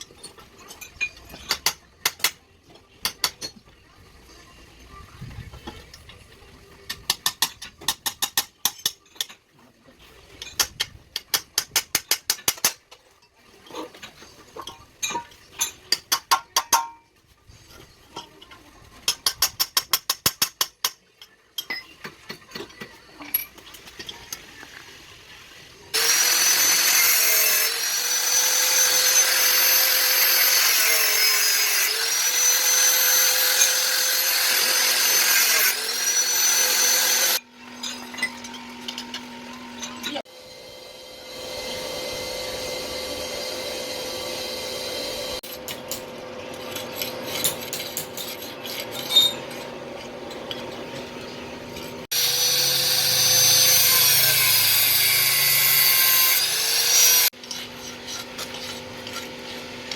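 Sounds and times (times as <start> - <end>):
power tool on iron plate: 25.9 - 59.9.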